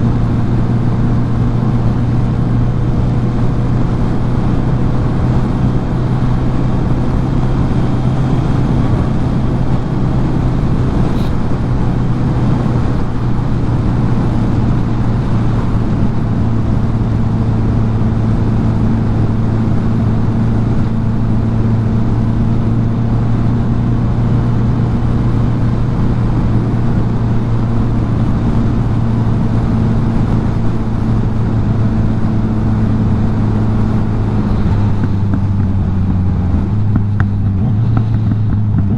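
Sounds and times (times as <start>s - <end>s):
motorcycle engine cruising: 0.0s - 38.9s
road and wind noise: 0.0s - 38.9s.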